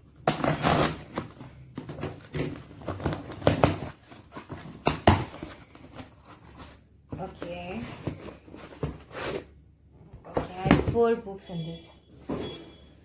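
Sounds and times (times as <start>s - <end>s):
packaging rustling and ripping: 0.2s - 9.5s.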